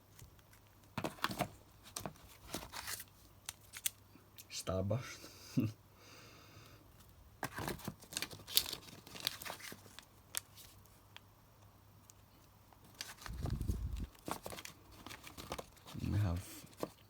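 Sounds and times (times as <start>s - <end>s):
packaging crinkling and rustling: 0.1s - 4.0s, 7.4s - 11.2s, 12.0s - 17.0s.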